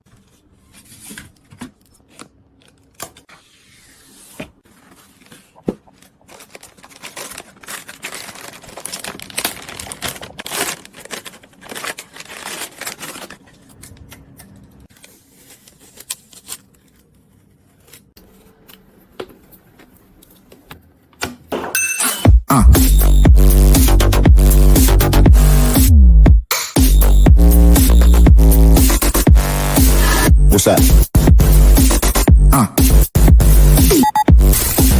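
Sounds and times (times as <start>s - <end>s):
plastic and cardboard rustling: 0.0s - 21.1s.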